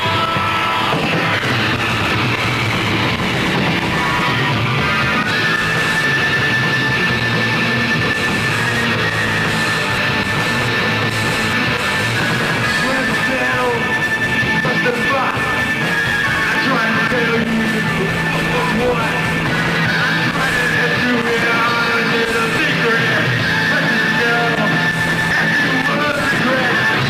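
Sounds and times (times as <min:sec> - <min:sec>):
rock band playing live: 0:00.0 - 0:27.0
person singing: 0:12.6 - 0:27.0.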